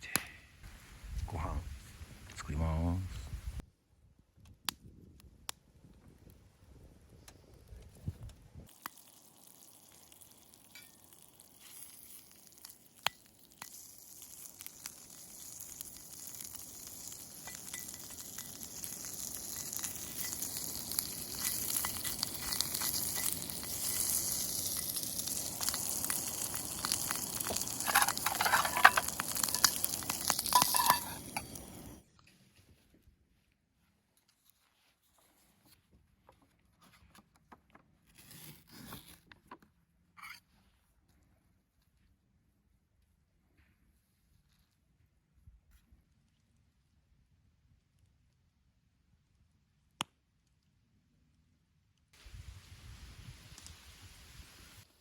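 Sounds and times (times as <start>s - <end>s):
campfire crackling and popping: 4.4s - 32.0s, 52.3s - 54.9s.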